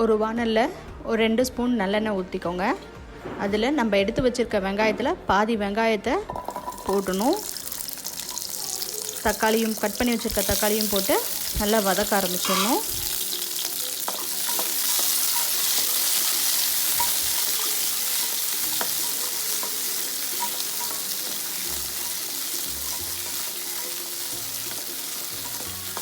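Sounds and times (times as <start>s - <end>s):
vegetables sizzling in a pan: 6.4s - 26.0s.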